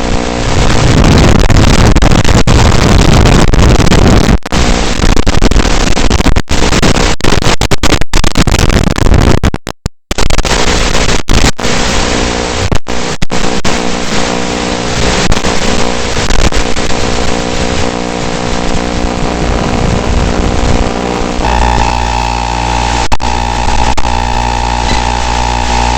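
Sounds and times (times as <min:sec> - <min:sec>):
drone motors buzzing: 0:20.9 - 0:25.9.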